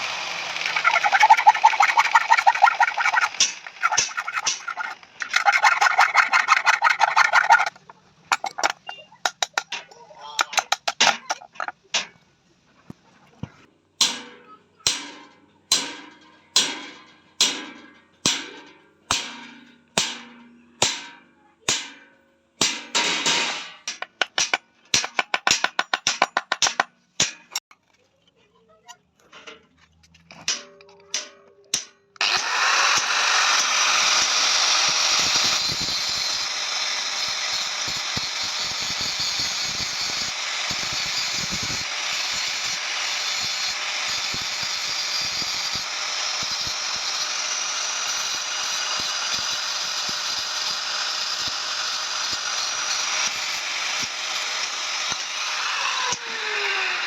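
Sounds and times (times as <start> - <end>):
loud rushing machine noise: 0.0 - 7.8.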